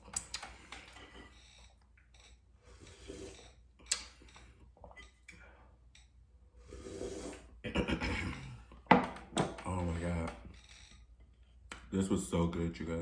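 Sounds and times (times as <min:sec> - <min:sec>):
slurping soup: 0:02.6 - 0:05.2, 0:06.6 - 0:07.6.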